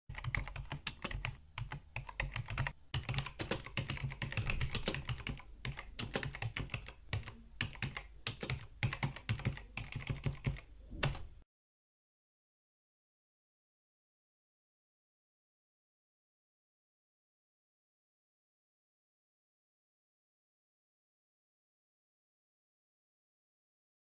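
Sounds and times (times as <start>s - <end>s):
keyboard typing clicks: 0.1s - 11.3s.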